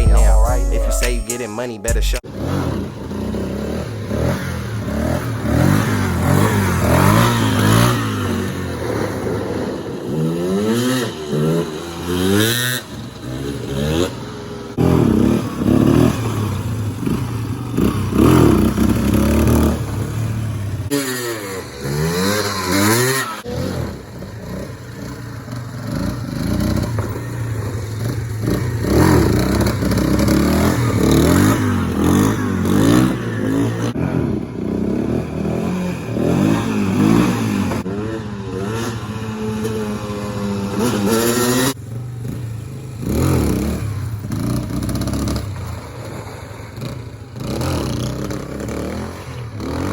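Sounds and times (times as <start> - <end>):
dirt bike engine revving: 28.0 - 41.8, 47.4 - 49.9.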